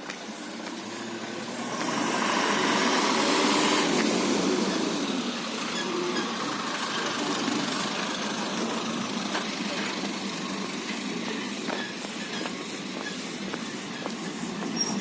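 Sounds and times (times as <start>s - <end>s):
vehicle passing by: 0.5s - 11.4s.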